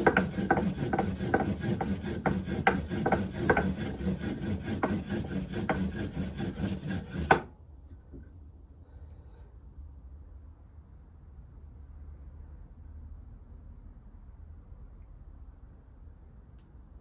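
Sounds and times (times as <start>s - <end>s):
rhythmic rasping rub: 0.0s - 7.4s.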